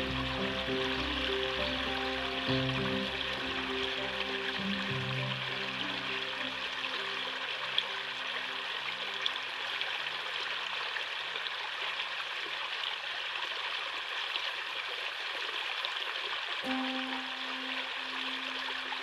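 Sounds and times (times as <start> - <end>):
faint background music: 0.0 - 9.8, 16.6 - 19.0
flowing water rushing: 0.0 - 19.0.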